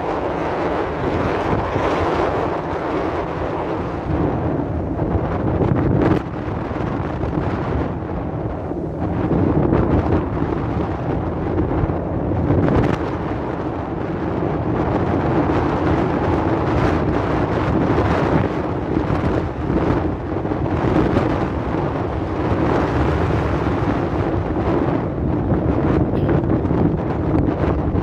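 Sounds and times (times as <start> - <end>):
wind buffeting microphone: 0.0 - 28.0
steady hum: 25.9 - 28.0.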